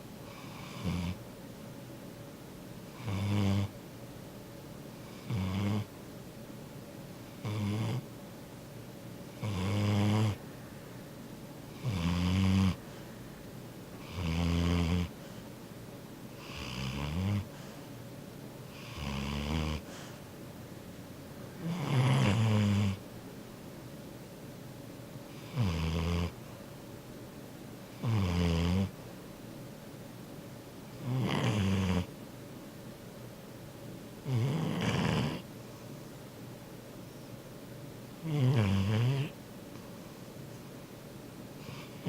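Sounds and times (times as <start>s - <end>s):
dog snoring: 0.2s - 1.2s, 2.9s - 3.8s, 5.0s - 5.9s, 7.2s - 8.1s, 9.3s - 10.4s, 11.7s - 13.0s, 14.0s - 15.4s, 16.3s - 17.8s, 18.7s - 20.2s, 21.6s - 23.0s, 25.3s - 26.5s, 27.9s - 29.0s, 31.0s - 32.1s, 34.2s - 35.5s, 38.2s - 39.4s, 41.6s - 42.0s.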